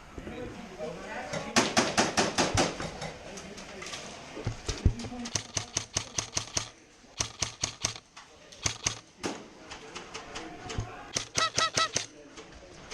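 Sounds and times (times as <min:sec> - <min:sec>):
airsoft guns firing: 0:05.1 - 0:08.0, 0:08.6 - 0:09.4, 0:11.1 - 0:12.1
high-pitched call: 0:11.2 - 0:12.1.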